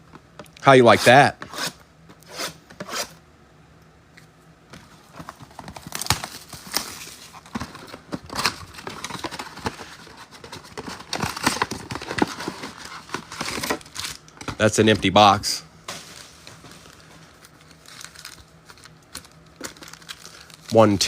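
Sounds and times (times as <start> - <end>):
wrappers and cardboard crinkling: 4.9 - 21.0.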